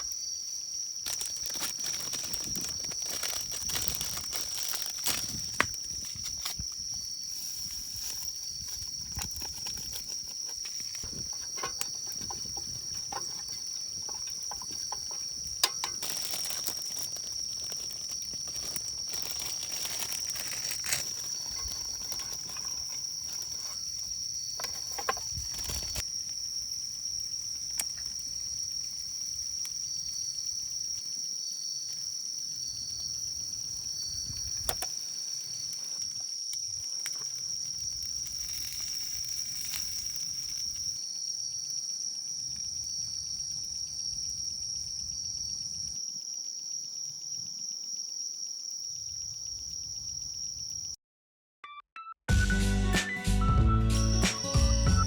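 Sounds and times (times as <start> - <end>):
wood fire crackling: 0.0 - 31.2, 31.9 - 41.0
crickets chirring: 0.0 - 51.0, 54.0 - 55.0.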